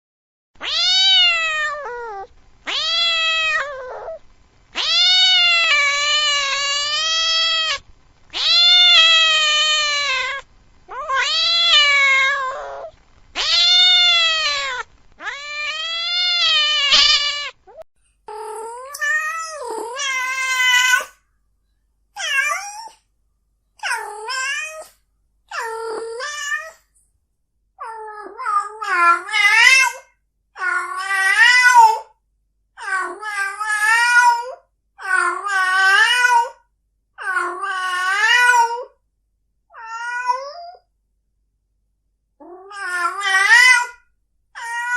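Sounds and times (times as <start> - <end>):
cat yowling: 0.6 - 4.2, 4.8 - 21.2, 22.2 - 23.0, 23.8 - 24.9, 25.5 - 26.8, 27.8 - 30.0, 30.6 - 32.1, 32.8 - 36.6, 37.2 - 39.0, 39.7 - 40.9, 42.4 - 44.0, 44.6 - 44.9.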